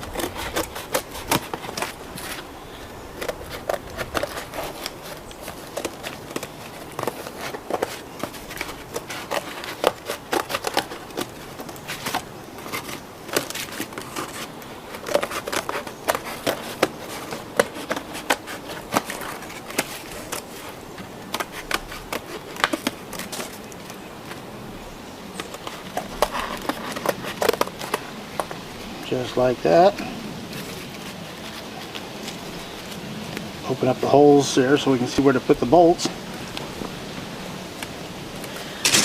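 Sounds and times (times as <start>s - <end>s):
scissors cutting cardboard: 0.0s - 2.5s, 3.1s - 24.0s.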